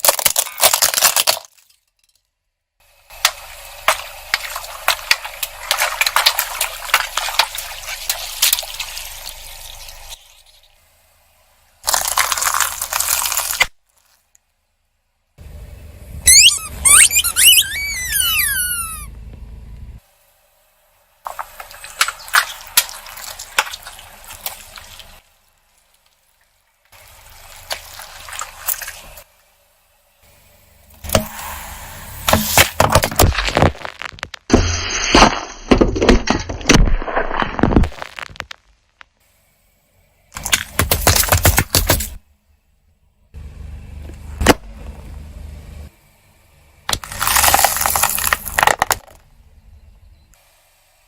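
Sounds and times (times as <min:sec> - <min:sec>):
wet crackling and squishing: 0:03.2 - 0:10.6, 0:11.8 - 0:14.5, 0:21.3 - 0:29.3, 0:32.6 - 0:39.1, 0:46.9 - 0:49.2
steady hiss: 0:29.0 - 0:32.8
crackling and popping snaps: 0:32.5 - 0:34.5, 0:36.6 - 0:39.2.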